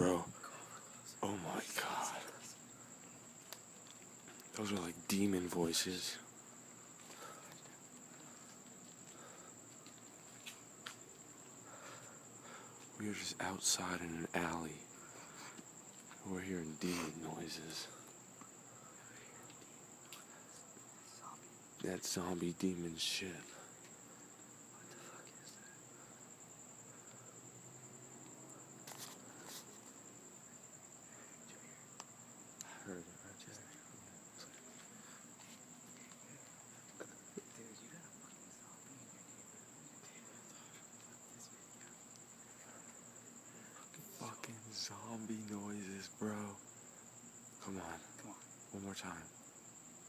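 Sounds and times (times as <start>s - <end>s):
crickets trilling: 0.0s - 50.0s
noisy scuffs: 28.7s - 30.1s, 32.9s - 39.0s.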